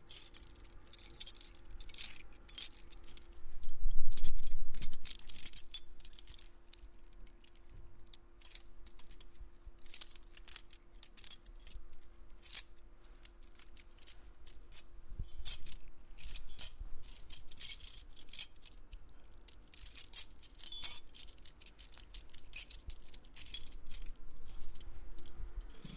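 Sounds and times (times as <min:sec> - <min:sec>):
keys jingling: 0:00.1 - 0:03.4, 0:04.1 - 0:07.7, 0:13.4 - 0:18.9, 0:19.5 - 0:25.9.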